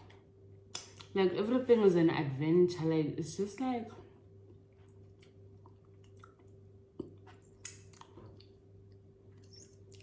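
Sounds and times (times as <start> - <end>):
steady low hum: 0.0 - 10.0
chewing clicks and smacks: 4.9 - 8.6.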